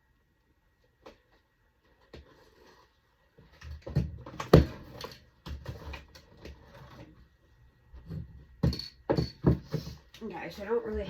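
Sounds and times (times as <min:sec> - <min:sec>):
household items knocking and rattling: 0:03.5 - 0:07.3, 0:07.9 - 0:10.2.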